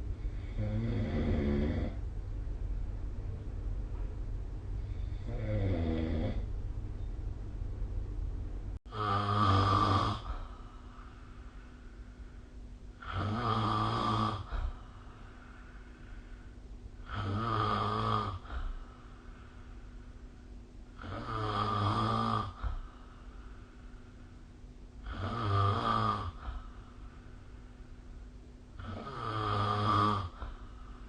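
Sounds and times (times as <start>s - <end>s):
faint steady hum: 0.0s - 31.0s
person snoring: 0.3s - 2.0s, 4.9s - 6.5s, 8.9s - 11.1s, 13.0s - 14.8s, 15.4s - 18.8s, 21.0s - 22.9s, 25.0s - 26.8s, 28.8s - 30.8s.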